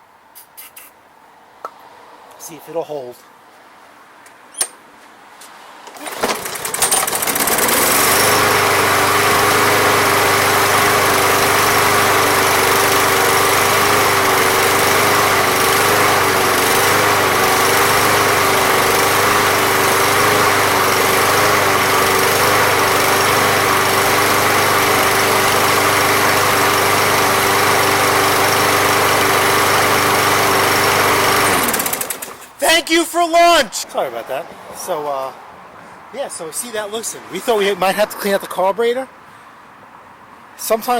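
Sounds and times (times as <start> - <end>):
lawn mower engine running: 5.9 - 34.3.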